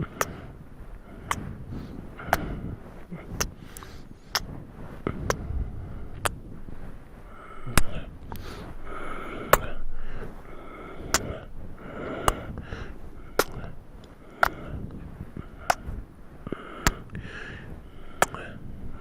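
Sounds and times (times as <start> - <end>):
breath sounds: 0.0 - 19.0
wet lip smacks: 13.4 - 13.7.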